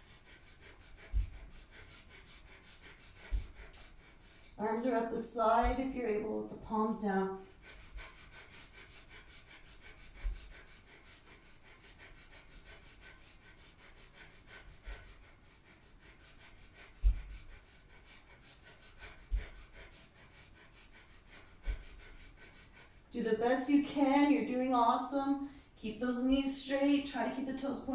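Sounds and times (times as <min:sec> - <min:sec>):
rapid forceful breathing through nose: 0:00.0 - 0:06.0, 0:06.7 - 0:24.3, 0:25.1 - 0:25.8
low thuds: 0:01.1 - 0:01.5, 0:03.3 - 0:03.6, 0:05.4 - 0:06.0.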